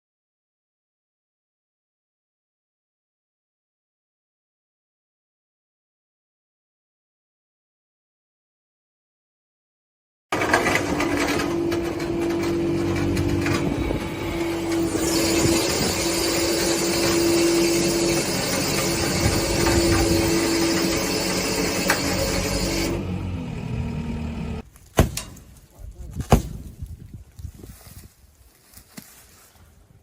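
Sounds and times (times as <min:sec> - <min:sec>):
loader engine running: 0:10.4 - 0:24.6.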